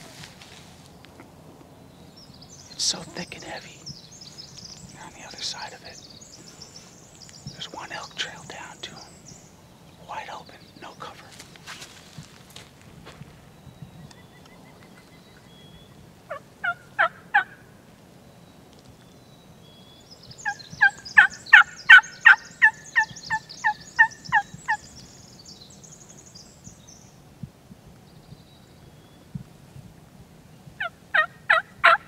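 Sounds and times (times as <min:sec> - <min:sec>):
turkey yelping: 0:16.3 - 0:17.6, 0:30.8 - 0:32.0.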